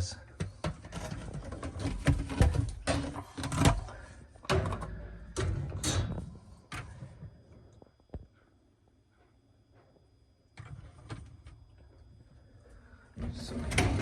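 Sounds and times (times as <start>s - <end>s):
plastic parts knocking and clunking: 0.2s - 7.3s.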